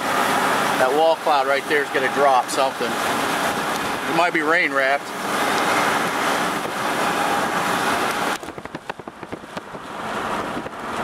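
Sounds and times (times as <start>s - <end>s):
strong wind on microphone: 5.3s - 11.0s
knocks and thumps: 8.4s - 9.8s.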